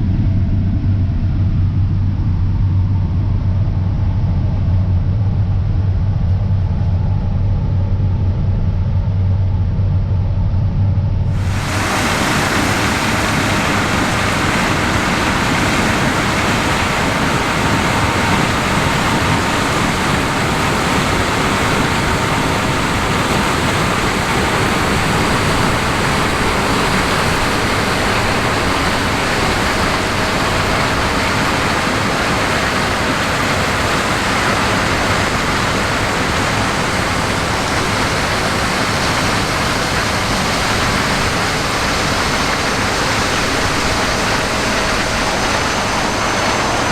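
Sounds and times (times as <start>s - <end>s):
combine harvester rushing noise: 11.3s - 46.9s.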